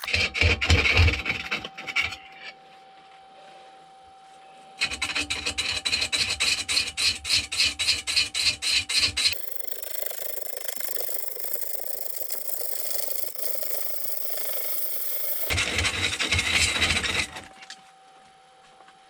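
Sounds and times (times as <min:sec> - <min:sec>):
lathe tool scraping chatter: 0:09.3 - 0:17.4
lathe motor hum: 0:09.4 - 0:15.5.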